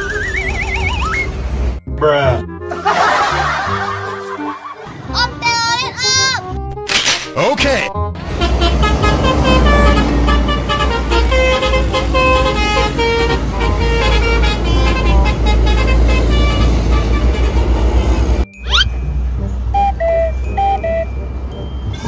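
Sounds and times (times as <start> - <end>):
bus horn playing a tune: 8.2 - 18.5
low engine rumble: 8.2 - 22.0.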